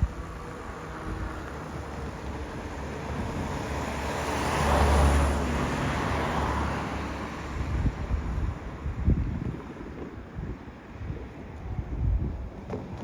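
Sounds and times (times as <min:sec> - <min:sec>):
wind buffeting microphone: 0:00.0 - 0:04.0, 0:07.4 - 0:13.0
vehicle passing by: 0:00.3 - 0:08.0.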